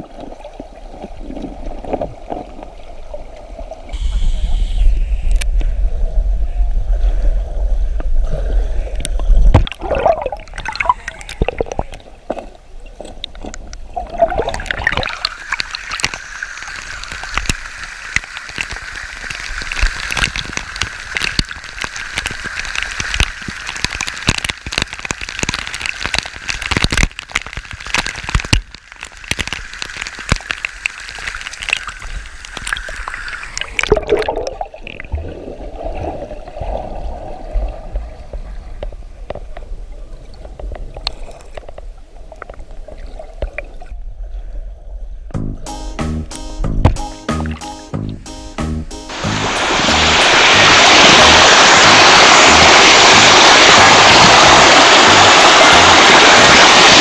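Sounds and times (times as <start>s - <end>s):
stream gurgling over rocks: 0.0s - 4.1s, 8.9s - 43.9s, 49.1s - 57.0s
low rumble: 45.2s - 56.6s.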